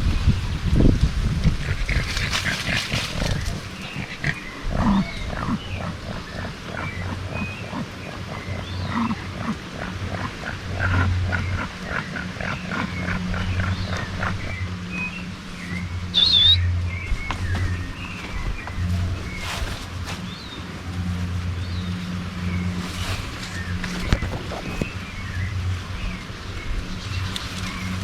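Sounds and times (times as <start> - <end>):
low hum: 0.0 - 28.0
farm animal calls: 1.4 - 20.7.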